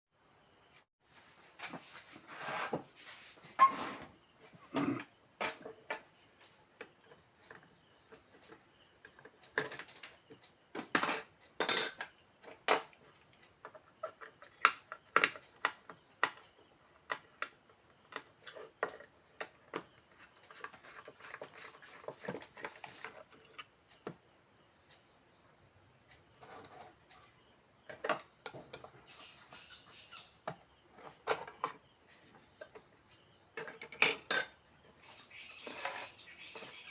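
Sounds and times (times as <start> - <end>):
crickets trilling: 0.2 - 36.9
small tools clicking and clinking: 6.8 - 23.7, 33.5 - 34.6.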